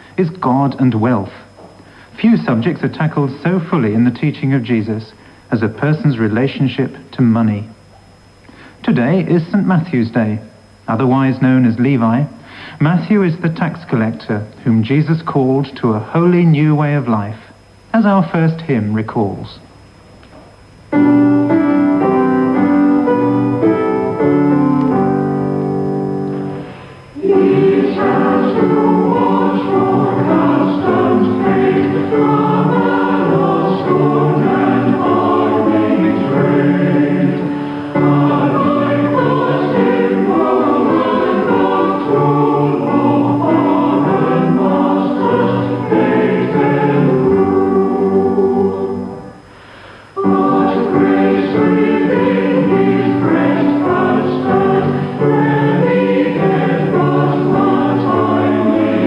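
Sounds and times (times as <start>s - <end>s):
choir singing a hymn: 20.9s - 49.4s, 50.1s - 59.0s
instrumental chords: 20.9s - 49.4s, 50.2s - 59.0s.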